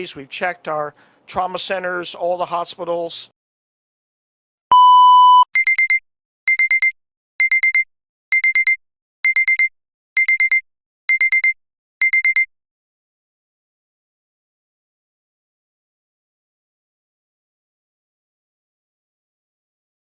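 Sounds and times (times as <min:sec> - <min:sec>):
electronic alarm beeping: 0:04.7 - 0:12.5.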